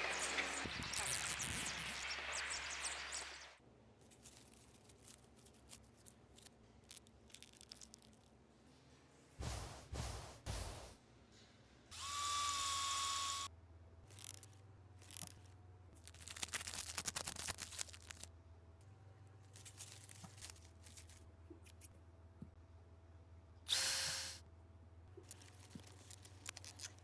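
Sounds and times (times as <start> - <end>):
small motor running: 11.9 - 13.5.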